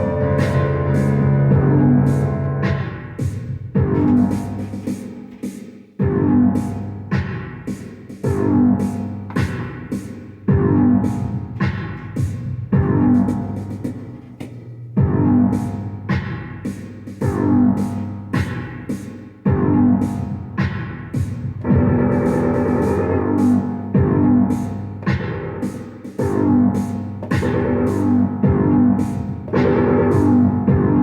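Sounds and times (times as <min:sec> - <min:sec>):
synthesizer chords: 0:00.0 - 0:03.2, 0:21.6 - 0:24.7, 0:25.6 - 0:31.0.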